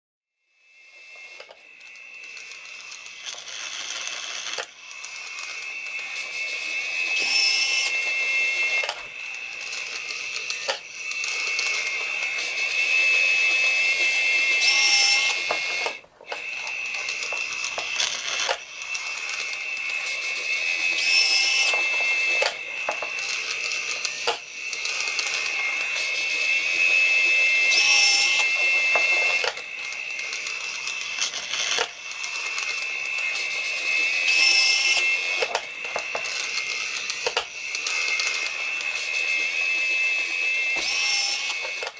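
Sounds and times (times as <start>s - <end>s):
model train motor whine: 0.4s - 41.9s.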